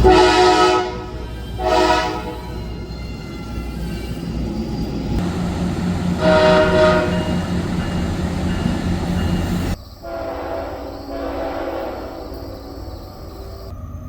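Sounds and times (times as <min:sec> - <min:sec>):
train horn: 0:00.0 - 0:02.8, 0:05.2 - 0:12.5
passing train rumble: 0:00.0 - 0:14.0.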